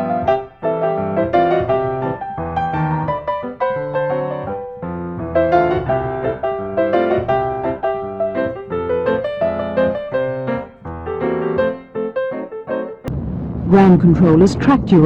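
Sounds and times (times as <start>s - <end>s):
background piano music: 0.0s - 13.3s.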